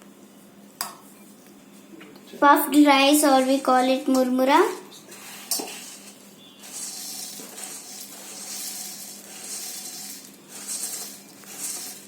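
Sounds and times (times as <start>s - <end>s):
puffed rice rustling into bowl: 5.1s - 12.0s.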